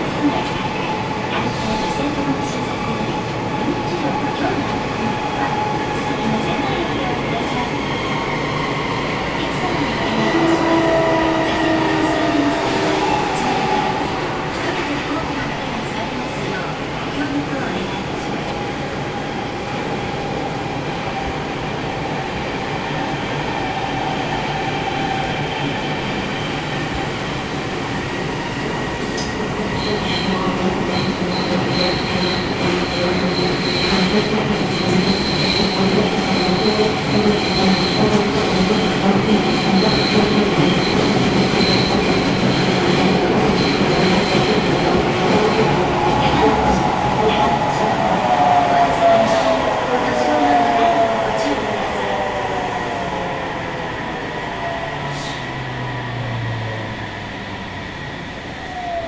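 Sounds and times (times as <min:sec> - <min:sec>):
train wheels rumbling on rail: 0:00.0 - 0:59.0.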